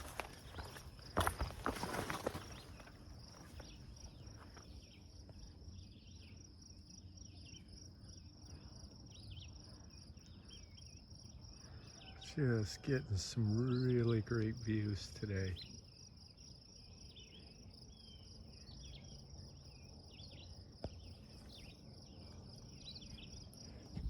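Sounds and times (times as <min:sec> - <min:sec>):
footsteps on trail: 0:00.0 - 0:05.5, 0:22.4 - 0:24.0
insects trilling: 0:00.0 - 0:24.0.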